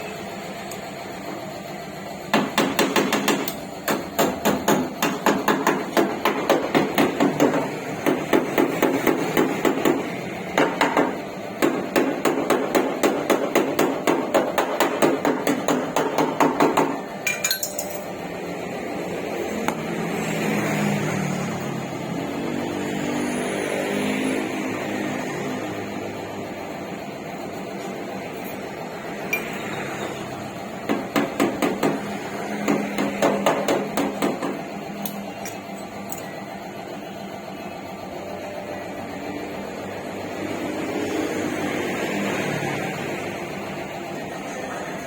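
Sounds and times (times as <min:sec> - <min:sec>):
hammer beating sheet metal: 0:02.3 - 0:18.0, 0:30.8 - 0:34.7.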